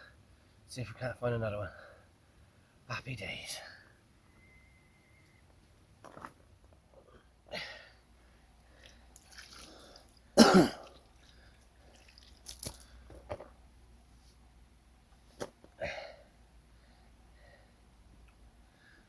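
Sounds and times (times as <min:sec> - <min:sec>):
person coughing: 0:10.4 - 0:11.0.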